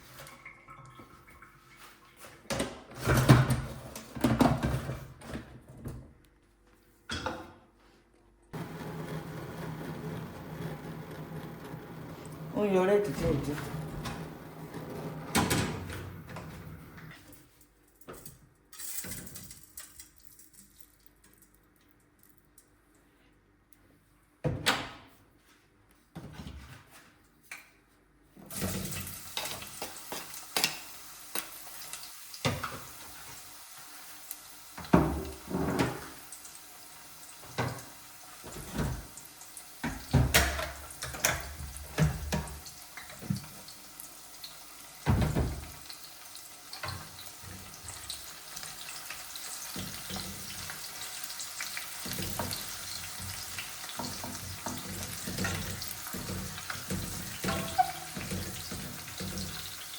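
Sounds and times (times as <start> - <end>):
pots and dishes knocking: 54.0 - 59.6
dishes clattering: 54.0 - 59.8.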